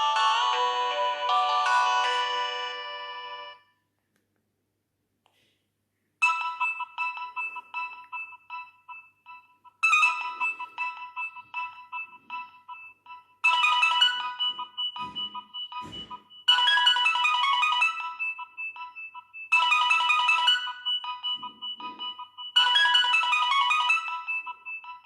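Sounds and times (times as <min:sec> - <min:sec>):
phone ringtone: 0:00.0 - 0:03.8, 0:06.2 - 0:25.0
sparse beeps: 0:20.8 - 0:22.8.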